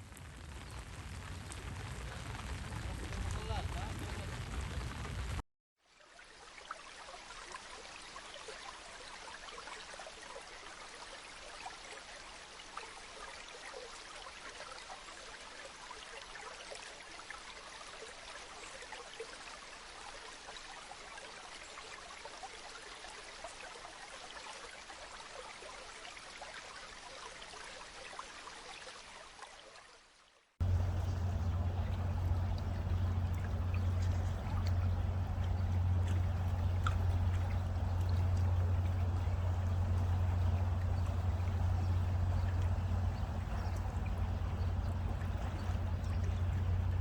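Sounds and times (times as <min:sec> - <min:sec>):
steady rain: 0:00.0 - 0:05.4, 0:30.6 - 0:47.0
running water: 0:30.6 - 0:47.0.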